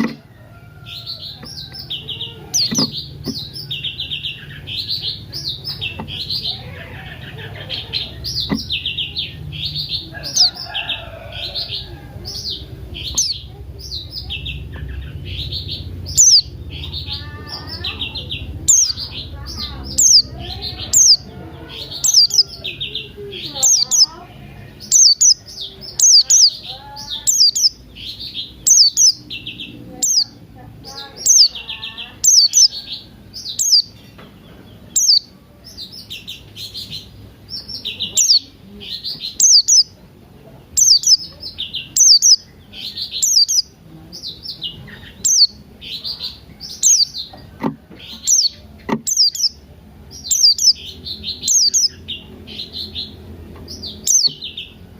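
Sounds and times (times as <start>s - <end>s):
soft bird chirping and warbling: 0.0s - 54.9s.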